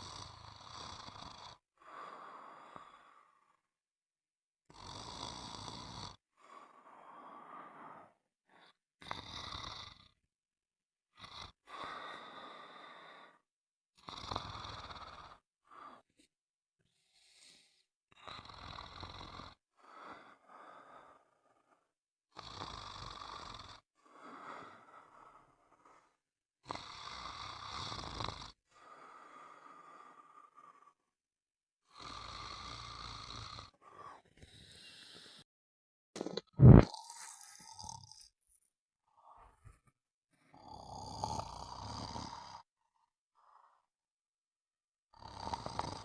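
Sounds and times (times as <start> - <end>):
person snoring: 0.0 - 3.6, 4.7 - 10.2, 14.0 - 16.1, 17.0 - 21.7, 22.4 - 31.0, 31.8 - 35.4, 36.2 - 38.4, 40.5 - 42.8, 45.1 - 46.0.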